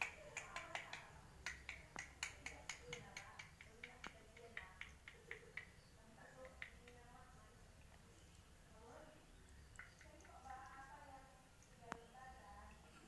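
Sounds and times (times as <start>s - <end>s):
sharp faint clicks: 0.0s - 5.7s.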